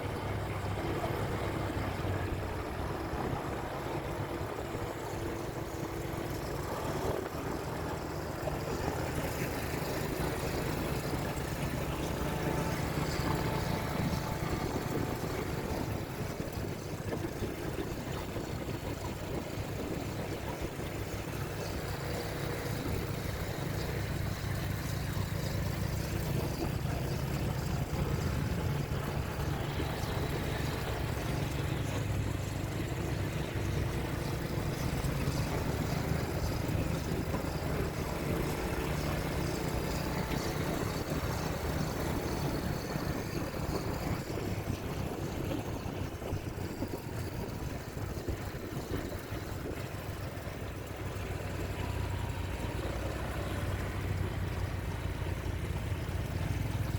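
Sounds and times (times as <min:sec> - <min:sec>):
road and traffic noise: 0:00.0 - 0:56.9
vehicle engine running: 0:00.0 - 0:56.9.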